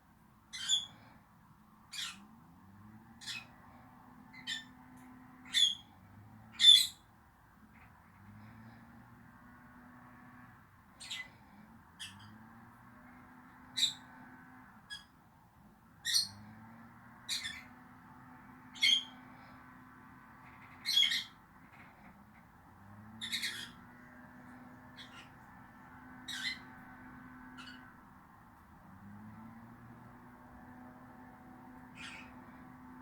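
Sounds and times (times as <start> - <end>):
lovebirds high-pitched calls: 0.5 - 1.1, 1.9 - 2.3, 3.2 - 3.6, 4.3 - 7.1, 11.0 - 11.4, 12.0 - 12.4, 13.6 - 14.1, 14.9 - 15.2, 16.0 - 16.4, 17.3 - 17.8, 18.7 - 19.5, 20.4 - 22.1, 23.2 - 25.6, 26.2 - 26.8, 27.4 - 28.0, 31.9 - 32.7.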